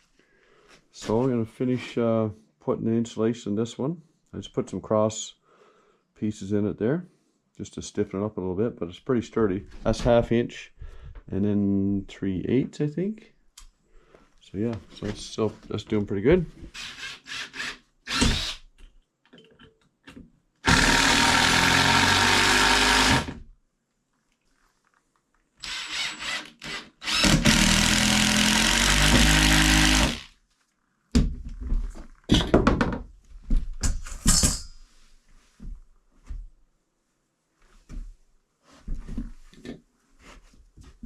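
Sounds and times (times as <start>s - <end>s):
power tool motor hum: 16.8s - 18.6s, 20.6s - 23.4s, 25.6s - 30.3s
wood knocking and clattering: 31.2s - 34.0s.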